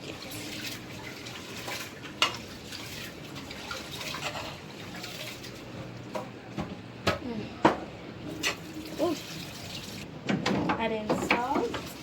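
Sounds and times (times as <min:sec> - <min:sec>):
pot sizzling and simmering: 0:00.0 - 0:06.0.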